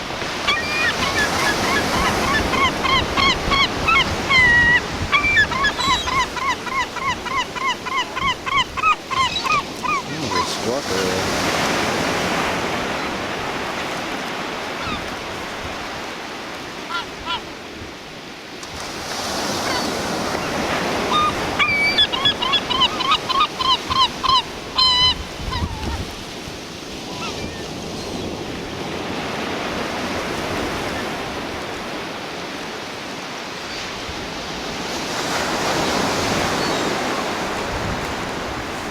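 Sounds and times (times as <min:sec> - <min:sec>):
surf washing on shore: 0:00.0 - 0:38.9
seagull calling: 0:00.4 - 0:11.5, 0:14.7 - 0:15.1, 0:19.5 - 0:26.0, 0:27.0 - 0:28.4.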